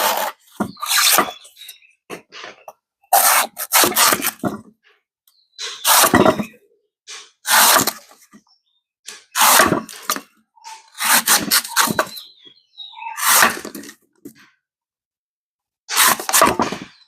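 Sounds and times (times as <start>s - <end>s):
knife chopping coconut husk: 3.1s - 4.4s, 7.4s - 8.1s, 9.4s - 10.2s, 10.9s - 12.2s.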